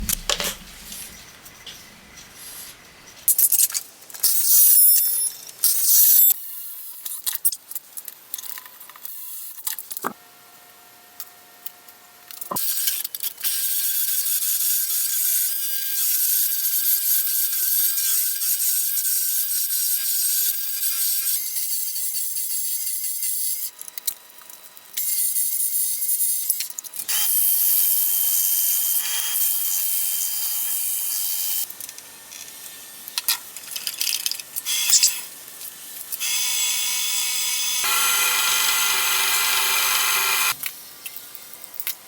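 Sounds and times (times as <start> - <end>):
loud bursts of wood cutting: 36.3 - 40.6
lathe tool cutting wood hiss: 36.6 - 40.6.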